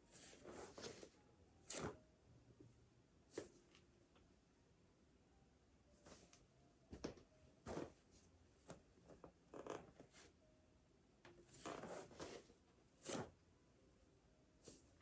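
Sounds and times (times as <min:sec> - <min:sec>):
clothing rustling on a mat: 0:00.1 - 0:02.0, 0:06.0 - 0:06.4, 0:07.6 - 0:08.8, 0:11.6 - 0:13.3.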